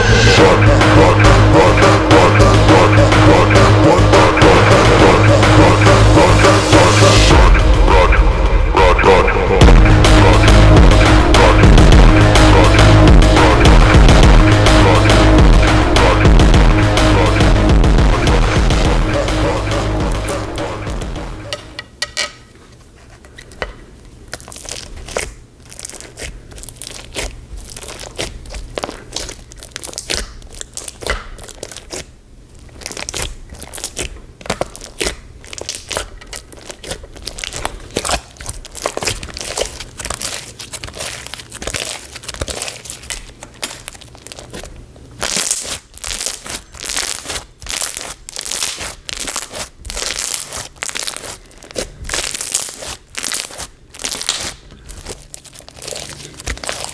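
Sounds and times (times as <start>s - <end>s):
slime crackling and popping: 24.1s - 56.9s.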